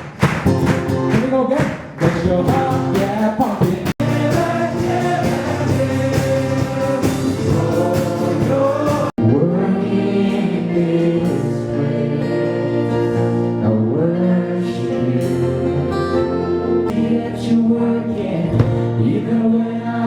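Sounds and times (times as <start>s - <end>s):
drum beat: 0.0s - 9.2s
group singing gospel song: 2.0s - 16.0s, 16.9s - 20.0s.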